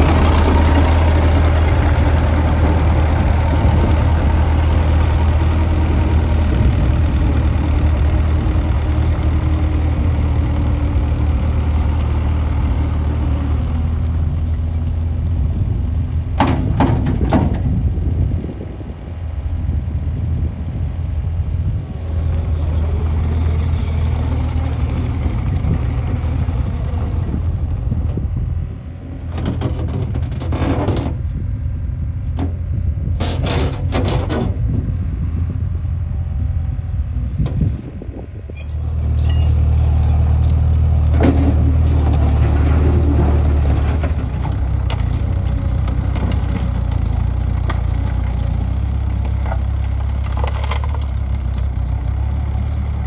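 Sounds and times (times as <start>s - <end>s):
diesel engine running: 0.0s - 53.0s.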